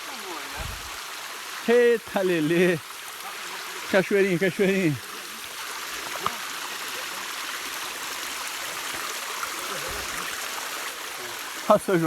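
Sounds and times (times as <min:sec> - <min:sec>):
small waterfall hissing: 0:00.0 - 0:12.0.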